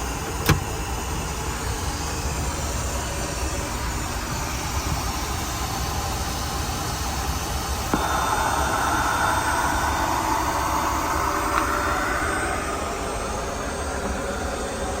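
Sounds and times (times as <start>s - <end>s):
airplane cabin rumble and airflow: 0.0s - 15.0s
click: 0.4s - 0.7s, 11.5s - 11.7s.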